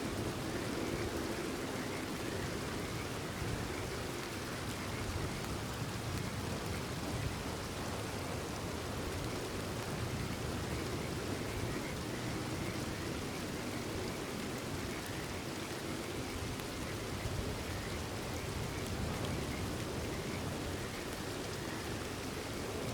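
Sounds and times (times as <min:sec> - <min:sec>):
steady rain falling: 0:00.0 - 0:22.9
faint frogs calling: 0:09.8 - 0:22.9.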